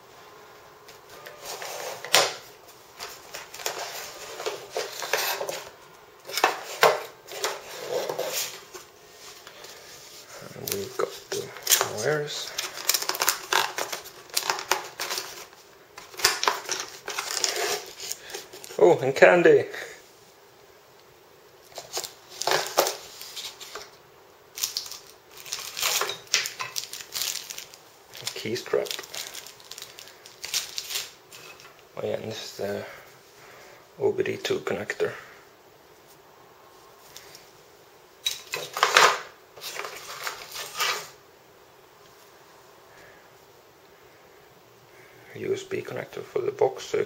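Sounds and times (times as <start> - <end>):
packaging rustling: 1.2 - 18.8, 21.7 - 31.8, 38.2 - 41.2.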